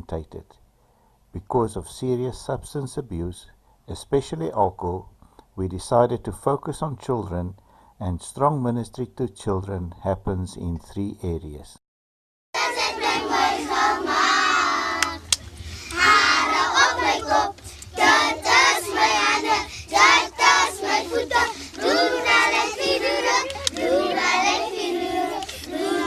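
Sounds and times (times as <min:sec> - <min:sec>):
children singing together: 0:12.6 - 0:26.0
steady low hum: 0:12.6 - 0:26.0.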